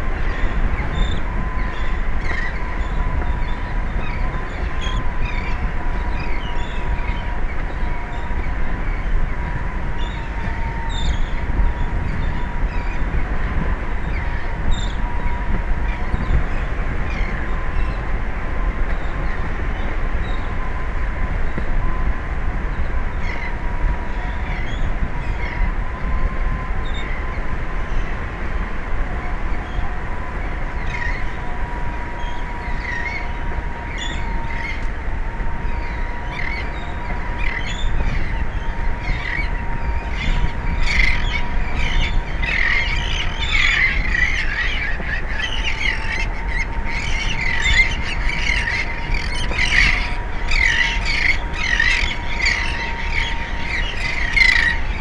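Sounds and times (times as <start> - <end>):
faint steady hum: 0.0 - 55.0
steady low rumble: 0.0 - 55.0
seabirds squawking and chirping: 35.8 - 55.0.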